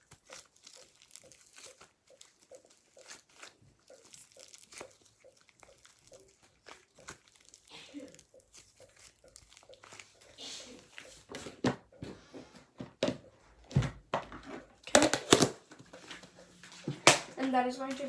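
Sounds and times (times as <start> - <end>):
slime crinkling and crackling: 0.0 - 11.6.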